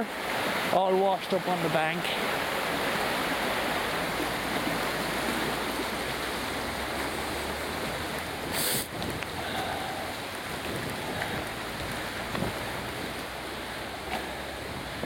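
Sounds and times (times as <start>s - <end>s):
river water rushing: 0.0s - 15.0s
brief sharp hiss: 8.5s - 8.9s.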